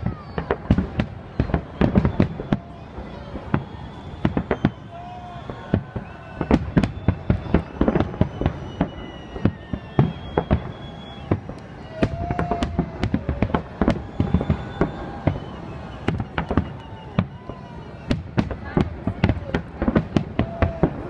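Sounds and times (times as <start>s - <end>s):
fireworks bangs and crackles: 0.0s - 21.0s.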